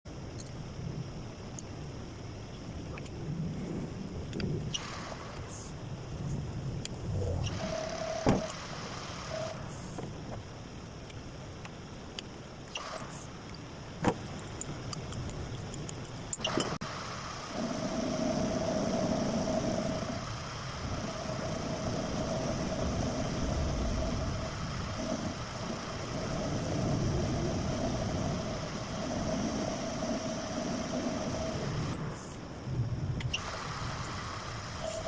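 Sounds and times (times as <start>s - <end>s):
low rumble: 0.6s - 8.6s
machine whining: 3.5s - 11.8s, 12.6s - 35.0s.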